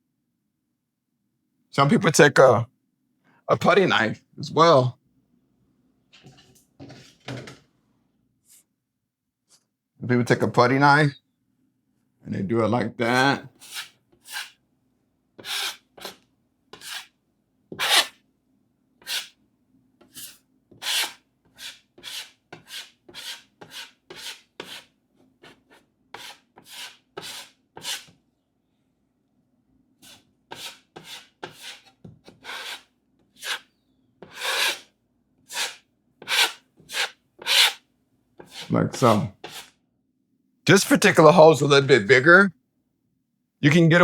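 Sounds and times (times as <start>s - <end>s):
putty knife scraping compound: 13.5s - 14.6s, 15.4s - 18.2s, 19.0s - 19.4s, 20.0s - 28.2s, 30.0s - 34.9s, 35.5s - 37.8s, 38.4s - 39.8s.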